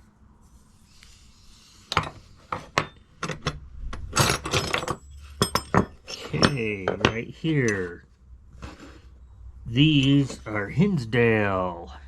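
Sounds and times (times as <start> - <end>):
steel wrenches clinking: 1.9 - 8.0.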